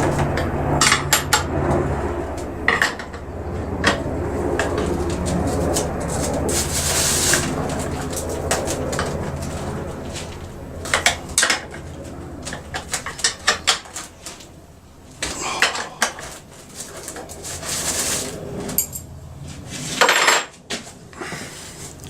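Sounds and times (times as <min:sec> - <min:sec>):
short scraping sounds: 0:15.3 - 0:18.8
metal tools clinking: 0:18.7 - 0:19.1.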